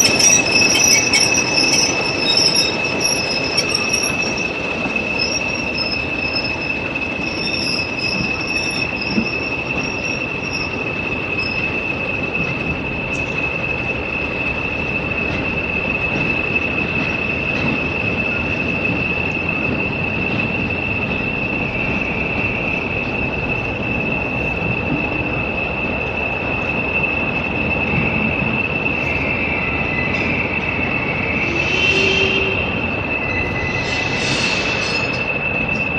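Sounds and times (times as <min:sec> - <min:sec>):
high-pitched whistle: 0:00.0 - 0:10.8, 0:28.9 - 0:35.9
train rumbling: 0:00.0 - 0:35.9.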